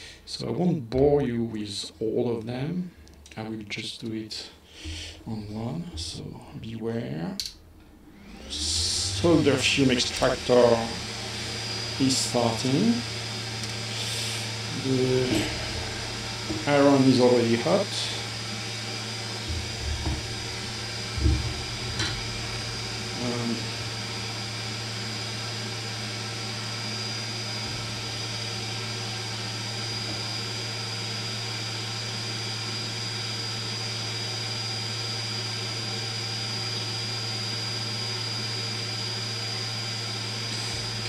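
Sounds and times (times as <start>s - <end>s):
extractor fan humming and whining: 0.0s - 41.0s
brief knocks: 19.4s - 23.2s.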